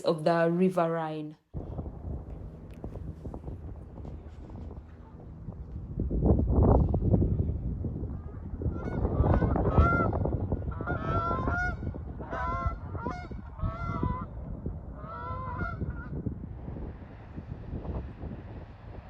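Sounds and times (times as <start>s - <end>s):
steady low rumble: 1.5s - 19.0s
geese honking: 10.7s - 14.3s.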